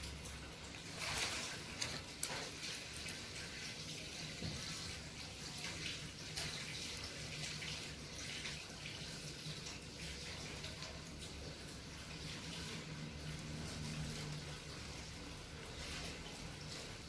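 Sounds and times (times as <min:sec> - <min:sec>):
cable wires clicking and rustling: 0:00.0 - 0:03.4.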